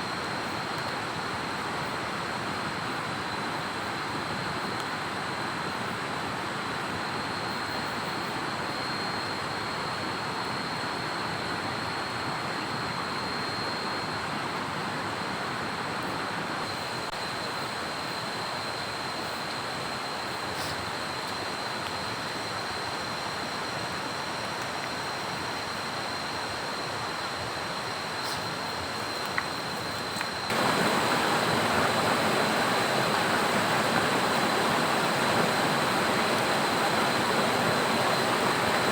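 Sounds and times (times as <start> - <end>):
heavy rain: 30.5 - 38.9
running water: 30.5 - 38.9.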